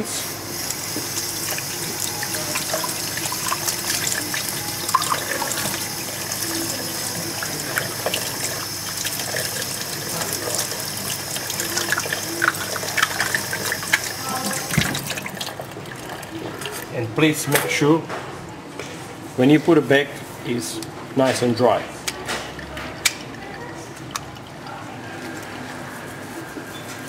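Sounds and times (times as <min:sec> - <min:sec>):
water running from a tap: 0:00.0 - 0:17.0, 0:22.4 - 0:24.8.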